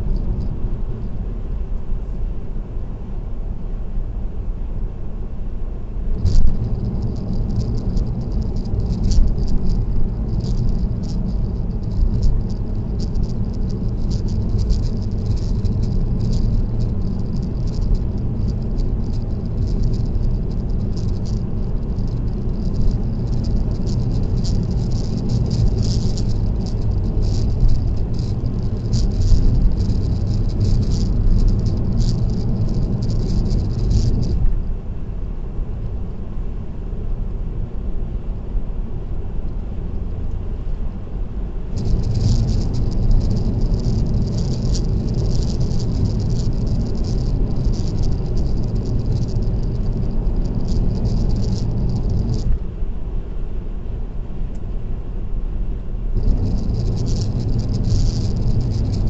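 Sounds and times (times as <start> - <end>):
road and engine rumble: 0.0 - 59.0
high-pitched rattle: 6.2 - 34.6, 41.7 - 52.6, 56.2 - 59.0.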